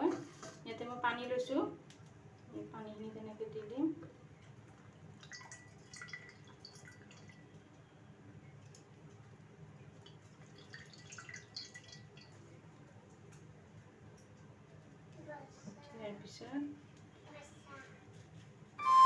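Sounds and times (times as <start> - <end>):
water drips and small splashes: 3.5 - 14.4.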